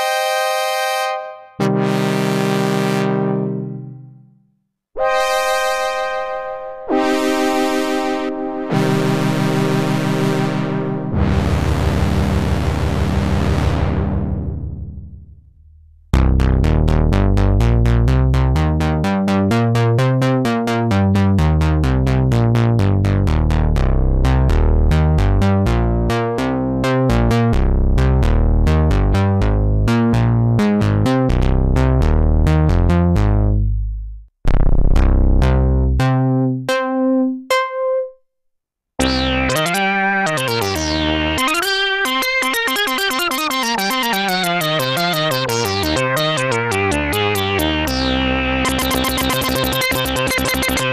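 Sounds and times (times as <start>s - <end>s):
synthesizer bass line: 0.0s - 4.4s, 5.0s - 38.2s, 39.0s - 50.9s
ringing synthesizer notes: 5.0s - 15.0s, 39.0s - 50.9s
synthesizer repeating short notes: 39.0s - 50.9s.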